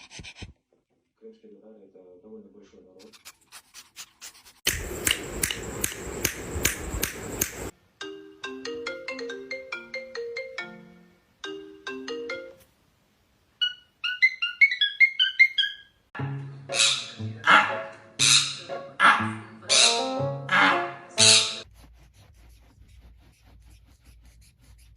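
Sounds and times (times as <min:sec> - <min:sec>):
ringtone melody: 0:08.0 - 0:12.6.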